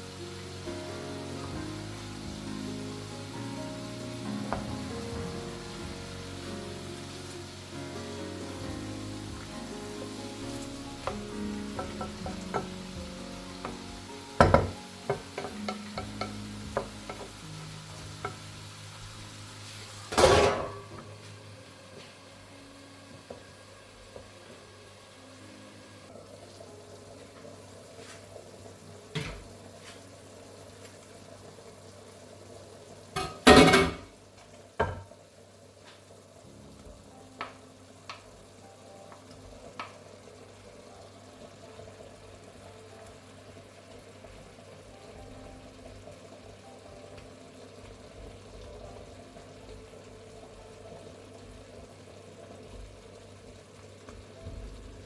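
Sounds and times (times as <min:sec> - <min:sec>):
dishes and utensils clattering: 0:20.1 - 0:21.1, 0:33.2 - 0:34.1.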